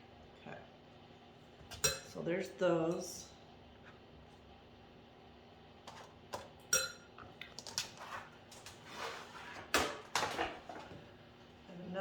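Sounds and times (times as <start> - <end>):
dishes and utensils clinking: 6.7 - 7.1.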